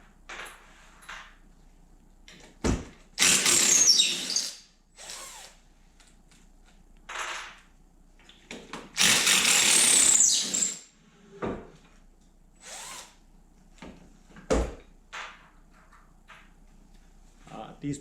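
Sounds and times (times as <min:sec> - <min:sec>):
cordless drill motor whine: 0:12.6 - 0:13.2.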